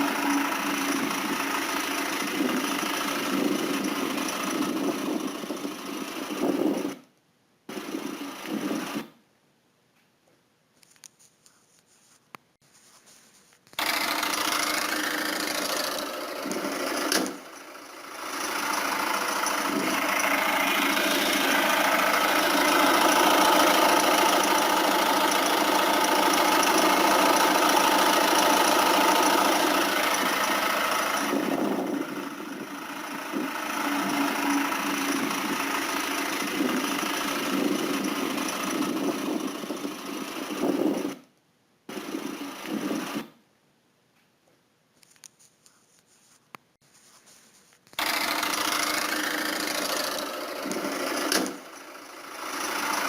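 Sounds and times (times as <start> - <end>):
diesel engine running: 0.0 - 7.0, 7.7 - 9.1, 13.7 - 41.2, 41.9 - 43.3, 47.9 - 53.0.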